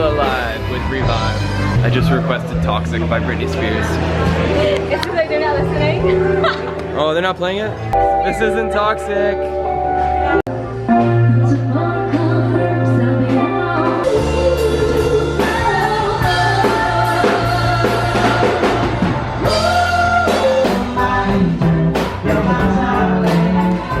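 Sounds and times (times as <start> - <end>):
rock music with singing: 7.8 - 24.0.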